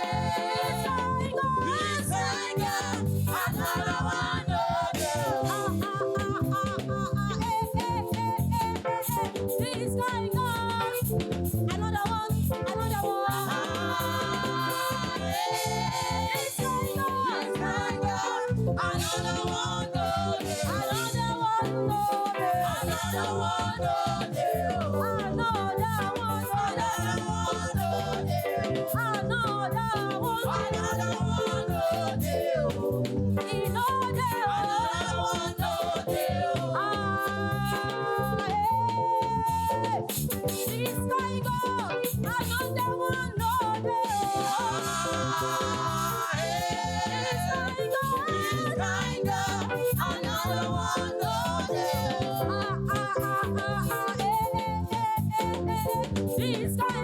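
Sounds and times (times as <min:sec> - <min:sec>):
band playing dance beat: 0:00.0 - 0:09.6.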